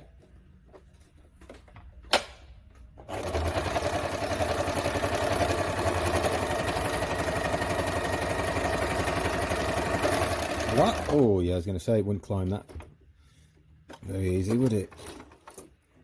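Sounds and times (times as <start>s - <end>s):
sewing machine stitching: 3.0s - 11.3s.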